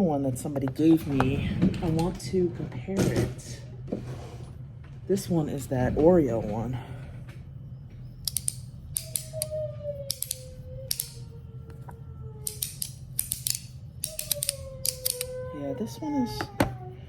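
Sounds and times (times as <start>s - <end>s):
sharp metallic clicks: 8.2s - 11.8s, 12.4s - 15.4s.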